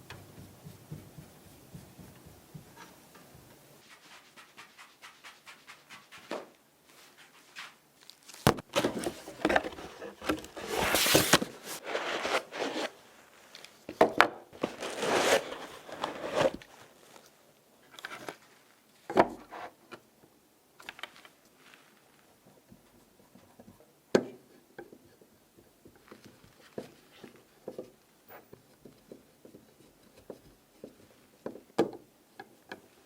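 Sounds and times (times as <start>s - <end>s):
rubbing and scraping: 3.8s - 13.5s, 14.6s - 17.2s.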